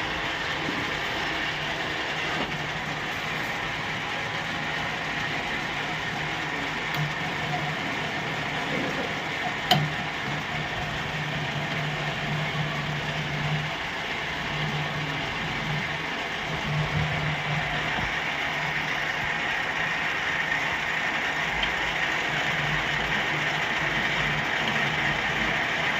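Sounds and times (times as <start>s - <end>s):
lathe humming: 0.0s - 25.9s.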